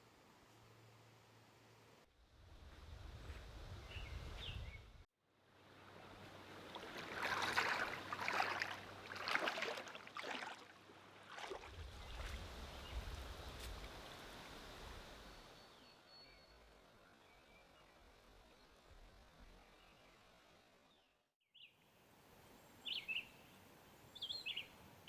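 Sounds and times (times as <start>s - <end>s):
water splashing and rushing: 6.5s - 14.5s.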